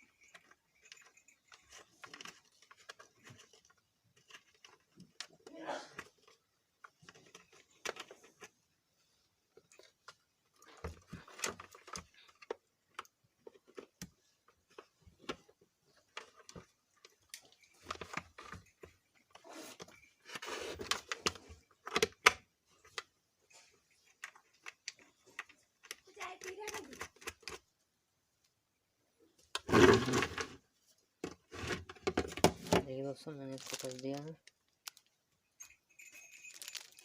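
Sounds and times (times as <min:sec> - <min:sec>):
screwdriver and plastic parts clicking: 0:00.2 - 0:08.6, 0:10.6 - 0:23.1, 0:24.0 - 0:27.6.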